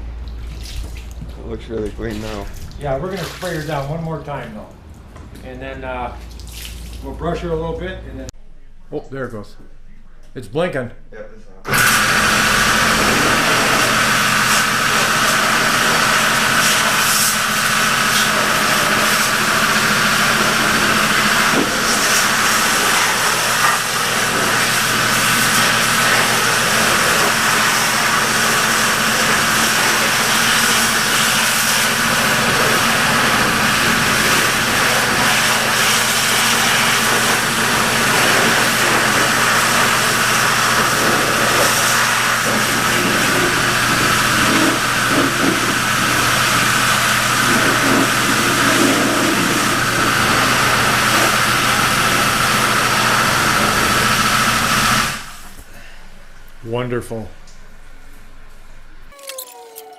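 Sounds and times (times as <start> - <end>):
pressure washer spraying: 11.7 - 55.6.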